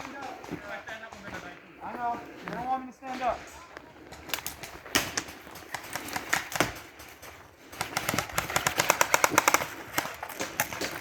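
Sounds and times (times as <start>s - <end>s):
airsoft guns firing: 4.1s - 11.0s.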